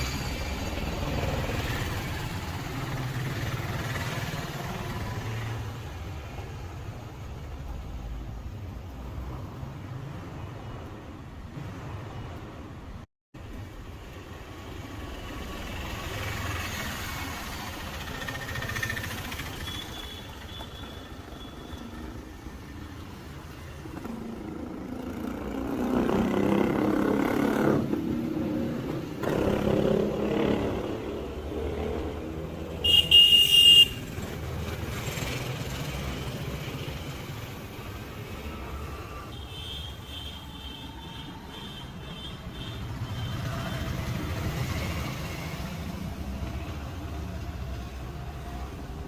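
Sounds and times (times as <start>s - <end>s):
street traffic: 0.0s - 49.0s
vehicle horn honking: 32.8s - 34.0s.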